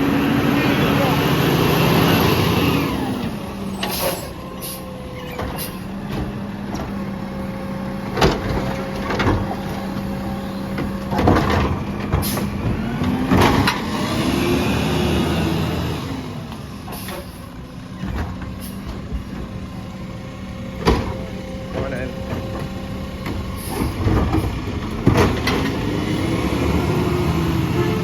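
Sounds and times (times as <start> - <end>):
truck engine droning: 0.0 - 28.0.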